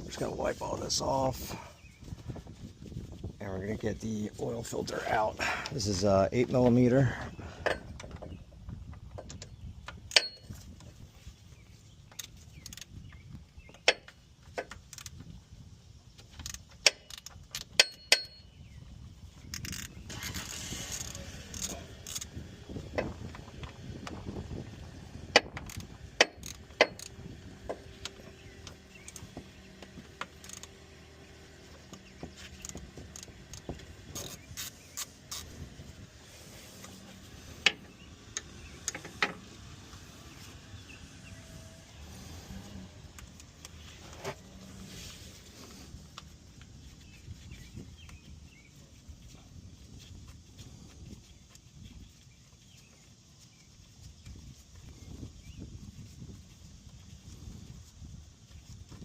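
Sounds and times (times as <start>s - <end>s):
metallic clicks of hand tools: 9.2s - 10.6s, 16.3s - 18.4s, 25.3s - 27.2s.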